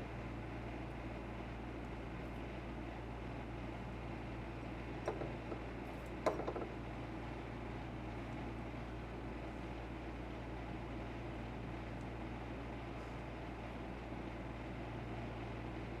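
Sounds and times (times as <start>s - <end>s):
low background hum: 0.0s - 16.0s
light knocks: 5.0s - 5.6s.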